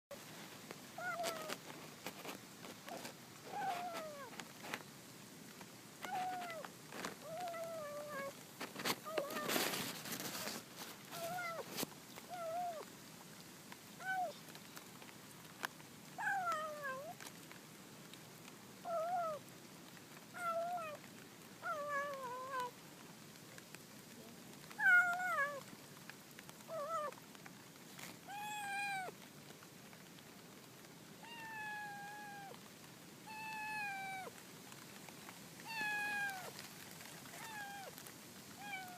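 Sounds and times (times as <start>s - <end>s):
kitten meowing: 1.0s - 1.6s, 3.5s - 4.3s, 6.0s - 6.6s, 7.2s - 8.4s, 11.2s - 11.7s, 12.3s - 12.8s, 16.2s - 17.1s, 18.8s - 19.4s, 20.4s - 21.0s, 21.6s - 22.7s, 24.8s - 25.6s, 26.7s - 27.2s, 28.3s - 29.1s, 31.2s - 32.6s, 33.3s - 34.3s, 35.7s - 36.6s, 37.4s - 37.9s, 38.6s - 38.9s.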